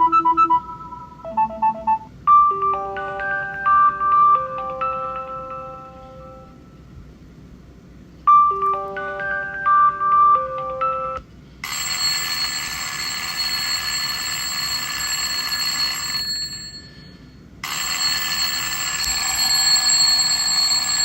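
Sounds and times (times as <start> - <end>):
electronic ringtone melody: 0.0 - 6.7, 8.3 - 21.0
alarm clock ringing: 11.6 - 21.0.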